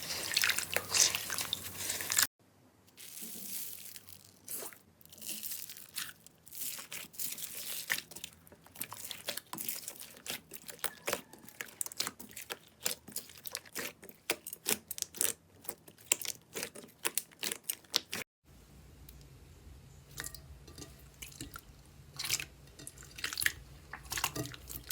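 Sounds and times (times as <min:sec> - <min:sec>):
slime crackling and popping: 0:03.0 - 0:18.2.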